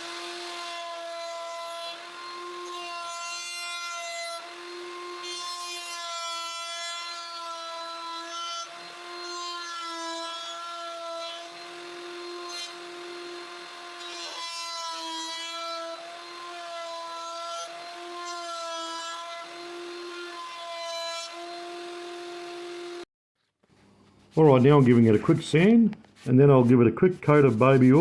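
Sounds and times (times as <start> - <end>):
router bit rasping wood: 0.0 - 23.1, 24.3 - 28.0
router running high pitch: 21.3 - 23.1.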